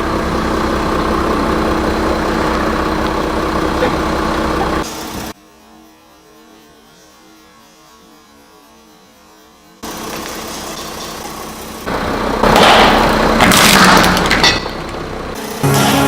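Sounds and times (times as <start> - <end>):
car engine idling: 0.0 - 5.3, 9.8 - 16.0.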